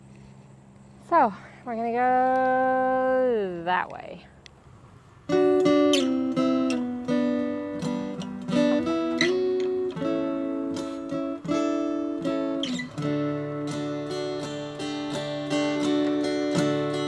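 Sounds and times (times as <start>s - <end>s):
acoustic guitar chords: 5.2s - 17.0s.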